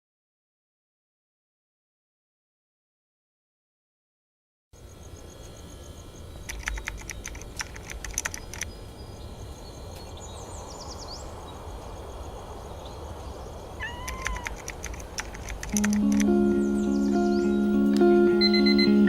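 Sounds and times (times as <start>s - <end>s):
sharp clicks and taps: 6.5s - 8.7s, 14.0s - 16.4s
quick high chirps: 13.8s - 19.0s.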